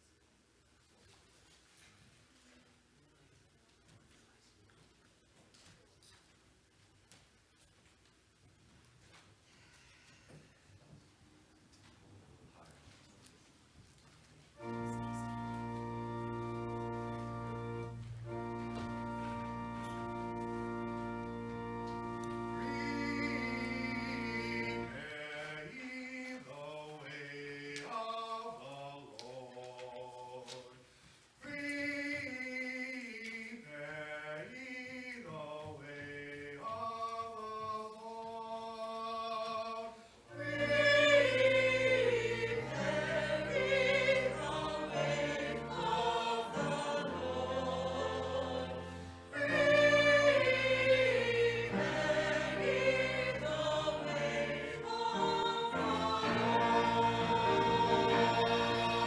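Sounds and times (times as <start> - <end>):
sustained low accompanying notes: 14.6 - 25.0
choir singing: 14.6 - 30.5, 31.4 - 59.0.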